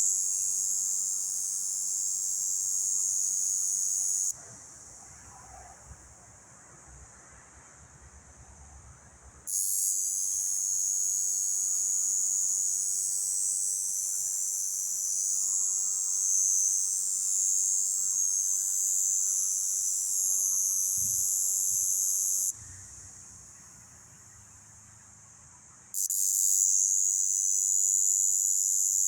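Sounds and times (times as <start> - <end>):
cicada buzzing: 0.0 - 4.4, 9.5 - 23.9, 26.0 - 29.0.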